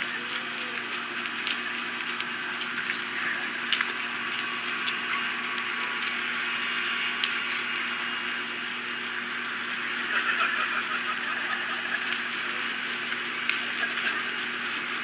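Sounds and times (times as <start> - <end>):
low electrical hum: 0.0 - 15.0
outdoor night ambience hiss: 0.0 - 15.0
faint clicks: 0.3 - 3.0, 3.7 - 7.7, 13.0 - 14.4.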